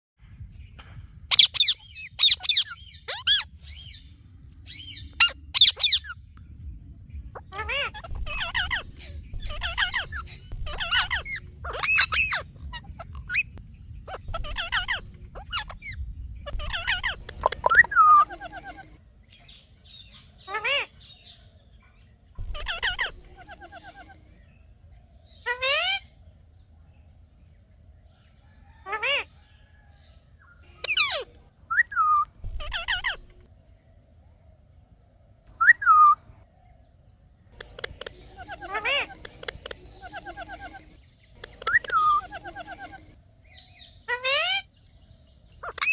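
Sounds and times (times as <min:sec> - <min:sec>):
parakeet screeching: 0:01.3 - 0:03.5, 0:04.8 - 0:06.2, 0:07.4 - 0:19.0, 0:22.4 - 0:24.2, 0:25.5 - 0:26.1, 0:30.8 - 0:33.4, 0:37.6 - 0:43.2
parrot shrill calls: 0:01.3 - 0:03.9, 0:04.7 - 0:06.2, 0:07.4 - 0:13.5, 0:14.1 - 0:19.0, 0:22.4 - 0:24.2, 0:25.4 - 0:26.1, 0:30.8 - 0:33.3, 0:37.6 - 0:43.2, 0:43.8 - 0:44.7, 0:45.6 - 0:45.9.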